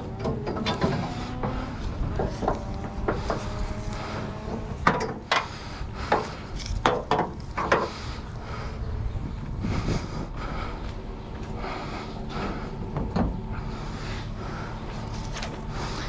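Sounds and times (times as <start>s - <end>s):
scrap metal knocks and clanks: 0.0s - 8.0s.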